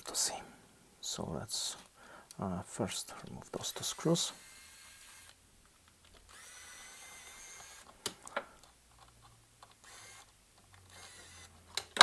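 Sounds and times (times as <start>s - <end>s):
electric screwdriver motor whining: 4.4s - 5.4s, 6.2s - 7.9s, 9.8s - 11.6s.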